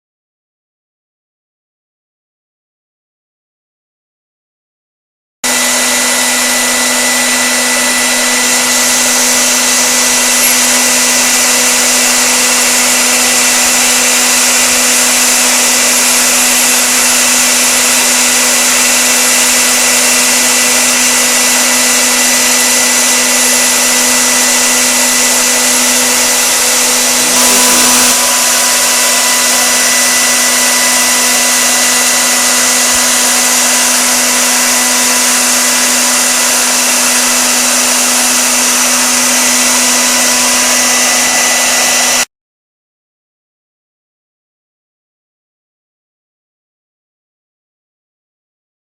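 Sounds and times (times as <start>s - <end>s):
router spindle whining: 5.4s - 42.3s.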